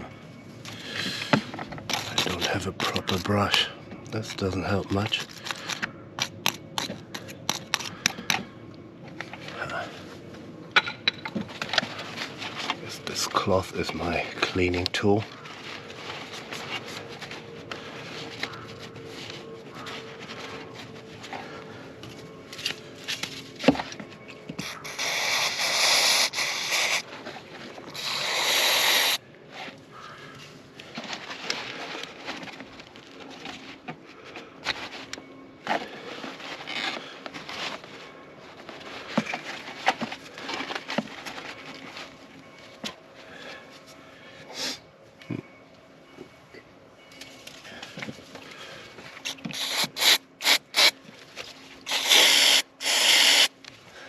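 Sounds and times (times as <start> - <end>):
aerosol spray hissing: 24.6 - 27.0, 28.0 - 29.2, 49.5 - 50.9, 51.9 - 53.5.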